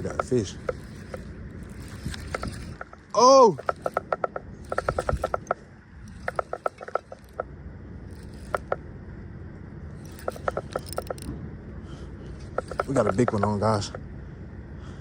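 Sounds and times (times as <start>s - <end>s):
fishing reel ratcheting: 0.0s - 8.9s, 9.9s - 11.3s, 12.4s - 14.0s.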